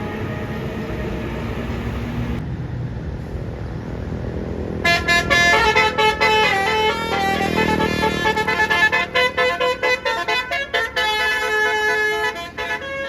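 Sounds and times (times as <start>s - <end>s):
bus engine rumbling: 0.0s - 13.0s
musical air horn: 4.8s - 13.0s.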